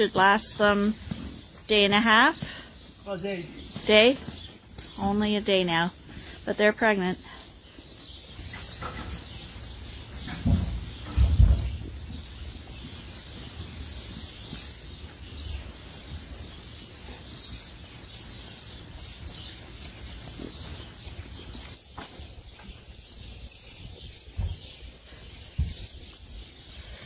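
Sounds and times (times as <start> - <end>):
small birds chirping: 0.0 - 27.0.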